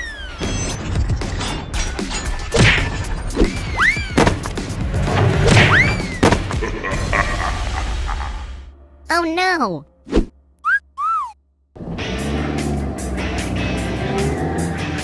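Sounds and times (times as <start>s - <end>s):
background music: 0.8s - 10.6s, 11.8s - 15.0s
cartoon thuds and crashing hits: 3.7s - 7.2s.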